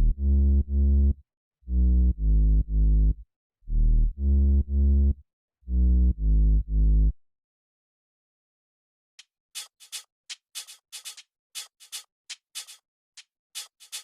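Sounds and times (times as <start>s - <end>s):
deep synth bass phrase: 0.0s - 7.2s.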